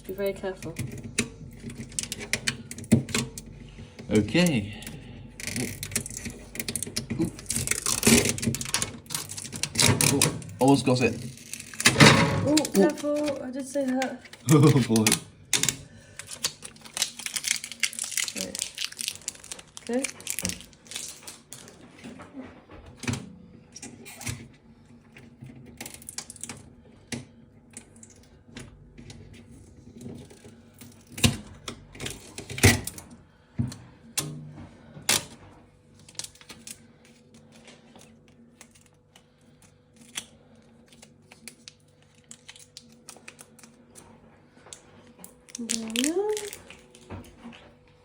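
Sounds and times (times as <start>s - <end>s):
plastic film peeling crackles: 4.1s - 22.2s, 25.8s - 26.7s, 35.9s - 47.6s.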